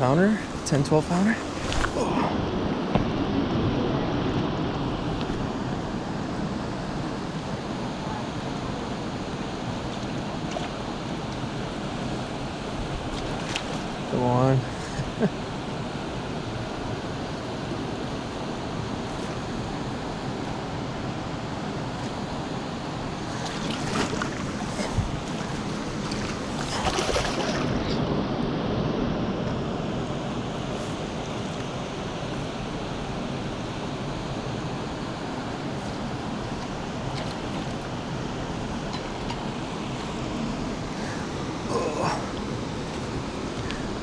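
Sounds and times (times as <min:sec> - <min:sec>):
river water rushing: 0:00.0 - 0:44.0
clicks and splashes: 0:13.1 - 0:13.9, 0:23.3 - 0:27.9.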